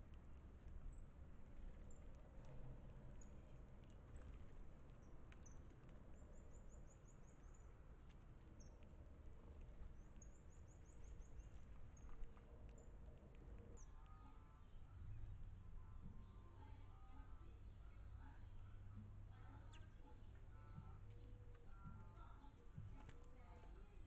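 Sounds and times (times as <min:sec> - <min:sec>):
low background rumble: 0:00.0 - 0:24.0
small birds chirping: 0:00.6 - 0:24.0.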